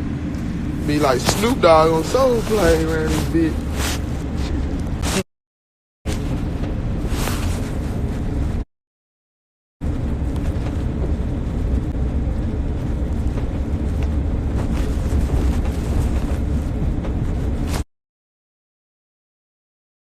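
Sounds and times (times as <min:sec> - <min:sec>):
moving car rumble and hiss: 0:00.0 - 0:05.2, 0:06.1 - 0:08.6, 0:09.8 - 0:17.8.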